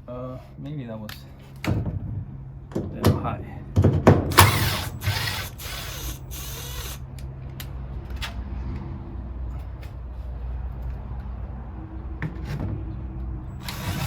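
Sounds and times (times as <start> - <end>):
power drill running: 4.3 - 7.1, 13.6 - 14.0.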